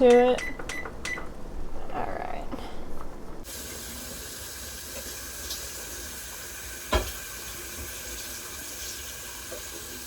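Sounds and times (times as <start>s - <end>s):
kitchen tap running: 3.4s - 10.0s.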